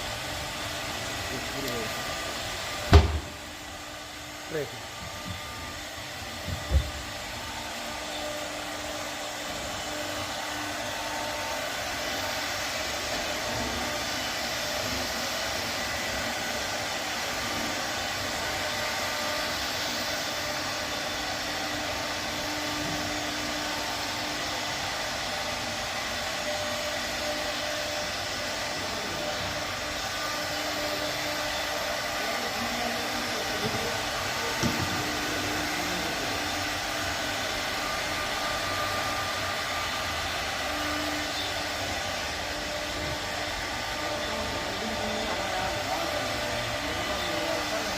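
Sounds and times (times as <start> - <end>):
sharp knock: 2.9 - 3.3.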